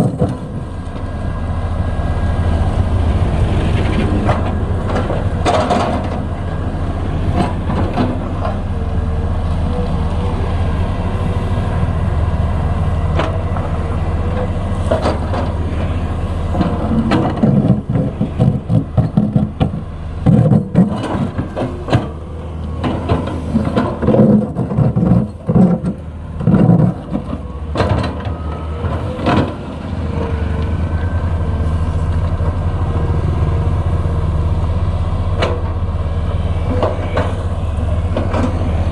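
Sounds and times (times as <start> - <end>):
excavator bucket knocking and scraping: 0.0 - 1.0, 3.6 - 6.5, 7.2 - 8.8, 13.1 - 30.4, 36.6 - 38.9
excavator diesel engine running: 0.0 - 38.9.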